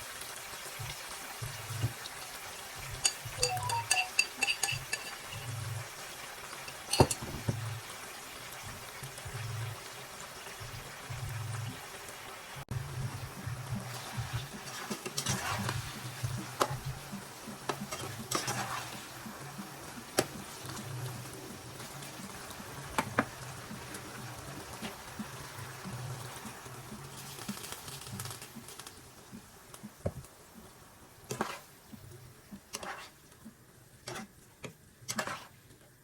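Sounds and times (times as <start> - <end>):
food cooking in a pan: 0.0 - 36.0
scraping in a pan: 3.0 - 5.8, 13.9 - 16.0, 17.8 - 19.1, 31.3 - 31.7, 32.7 - 33.2, 34.1 - 34.3, 35.1 - 35.6.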